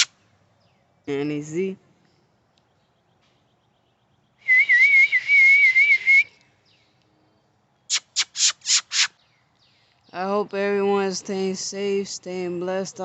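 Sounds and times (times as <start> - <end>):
person whistling: 4.4 - 6.4
short harsh call: 7.9 - 9.2.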